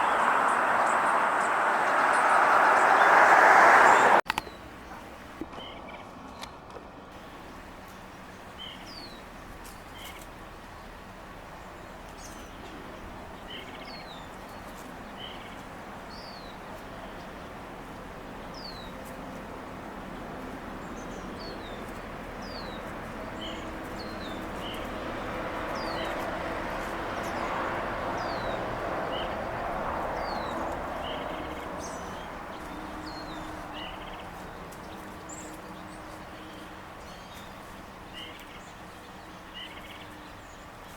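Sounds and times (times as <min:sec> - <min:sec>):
broad rushing sound: 0:00.0 - 0:04.2
outdoor background noise: 0:00.0 - 0:40.9.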